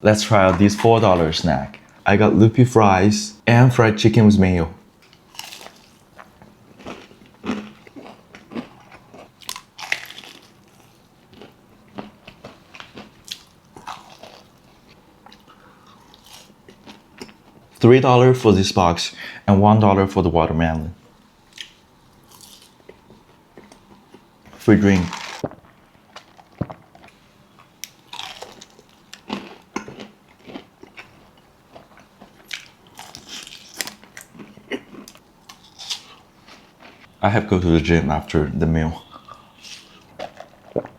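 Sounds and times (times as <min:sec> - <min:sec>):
crunchy chewing of fried food: 0:05.0 - 0:17.8, 0:21.5 - 0:37.2, 0:39.0 - 0:40.9.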